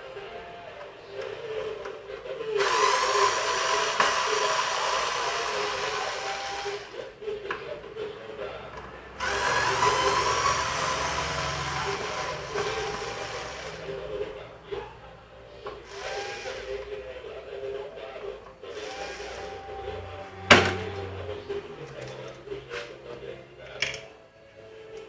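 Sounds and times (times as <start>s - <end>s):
small electric motor whining: 2.6s - 7.0s, 9.2s - 14.4s, 15.9s - 16.9s, 18.7s - 20.3s.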